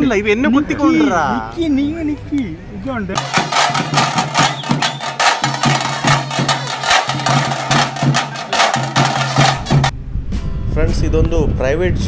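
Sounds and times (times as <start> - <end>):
percussive background music: 3.2 - 9.9.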